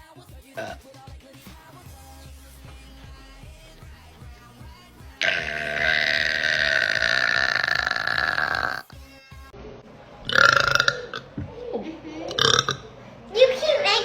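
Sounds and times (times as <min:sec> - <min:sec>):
woman burping: 0:00.6 - 0:00.8, 0:05.2 - 0:08.9, 0:10.3 - 0:11.3, 0:12.3 - 0:12.9
faint music: 0:01.4 - 0:14.0.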